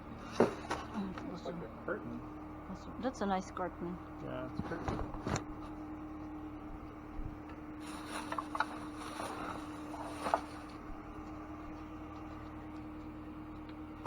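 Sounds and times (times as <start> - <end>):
steady low hum: 0.0 - 14.0
rustling and knocks in dumpster: 0.2 - 1.3, 7.8 - 10.9.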